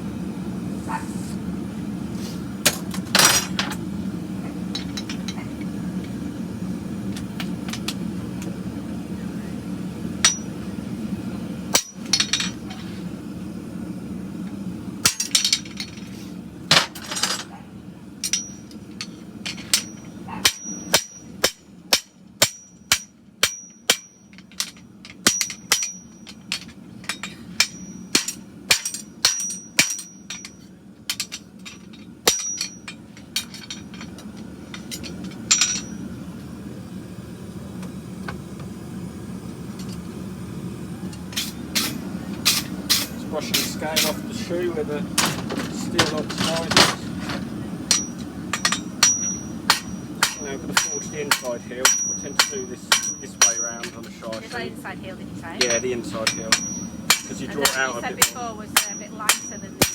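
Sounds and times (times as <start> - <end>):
gas forge humming: 0.0 - 59.9
hammer ringing on anvil: 10.2 - 10.6, 11.7 - 12.6, 18.2 - 18.8, 19.6 - 26.4, 27.1 - 34.0, 34.8 - 36.1, 47.9 - 54.6, 55.6 - 59.9.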